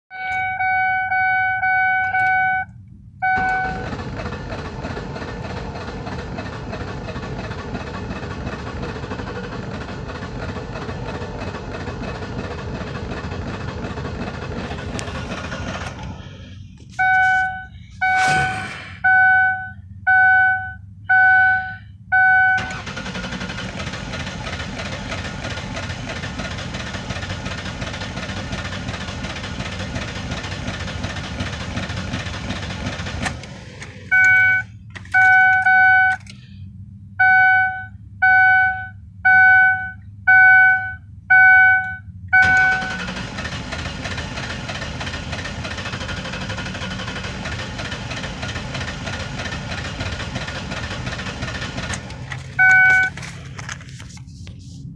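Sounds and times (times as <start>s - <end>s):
dashboard warning chime beeping: 0.1s - 3.9s, 17.0s - 22.8s, 34.1s - 36.4s, 37.2s - 43.1s, 52.5s - 53.2s
car engine cranking on starter: 3.2s - 19.2s, 22.6s - 36.5s, 42.3s - 54.2s.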